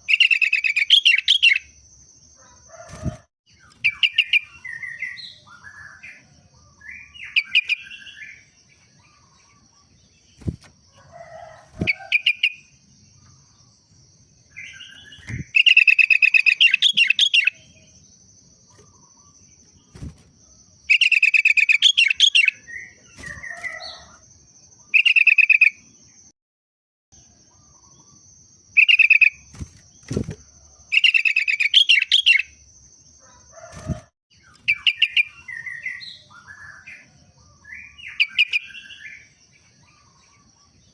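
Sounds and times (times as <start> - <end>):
wings fluttering: 2.7 - 3.9, 10.3 - 12.3, 15.0 - 15.6, 19.6 - 20.5, 23.0 - 24.2, 29.4 - 30.5, 33.5 - 34.8.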